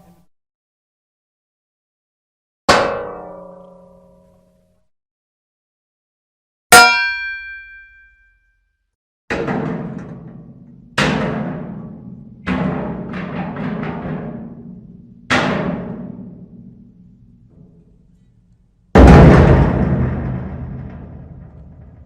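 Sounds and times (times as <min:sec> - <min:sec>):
heavy metal object struck booming: 0:19.0 - 0:22.0.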